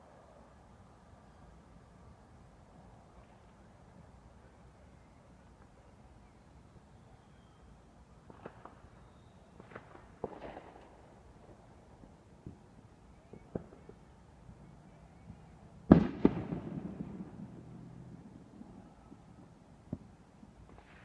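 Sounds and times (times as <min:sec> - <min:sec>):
fireworks pops: 0:08.3 - 0:08.8, 0:09.5 - 0:11.0, 0:13.3 - 0:14.0, 0:15.9 - 0:17.4
fireworks bang with echo: 0:09.6 - 0:11.0, 0:15.9 - 0:18.9.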